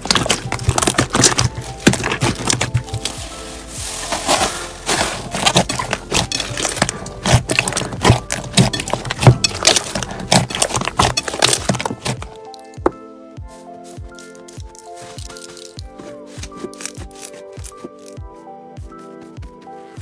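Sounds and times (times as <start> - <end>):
slime crackling and popping: 0.0 - 12.5
quiet background music: 0.0 - 20.0.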